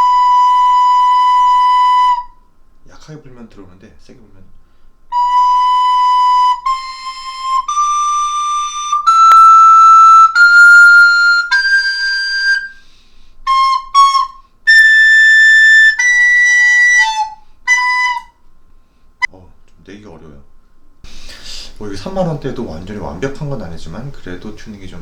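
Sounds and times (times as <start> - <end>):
recorder playing held notes: 0.0 - 2.3, 5.1 - 12.8, 13.5 - 18.3.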